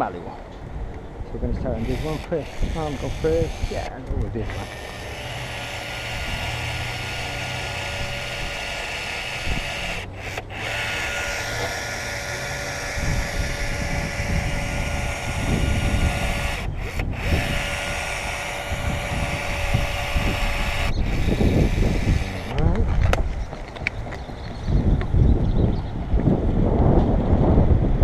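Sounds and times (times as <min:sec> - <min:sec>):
low rumbling noise: 0:00.0 - 0:28.0
power tool motor whining: 0:01.4 - 0:24.2.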